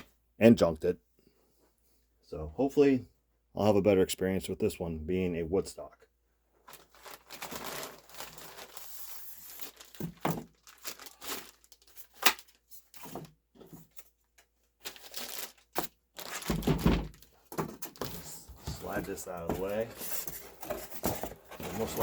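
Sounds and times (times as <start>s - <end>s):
packaging rustling and crinkling: 6.6s - 22.0s.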